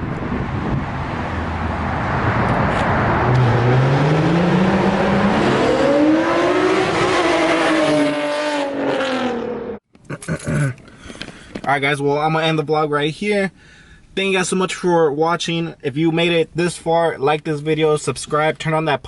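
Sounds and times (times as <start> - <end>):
car engine accelerating past: 0.8 - 9.8.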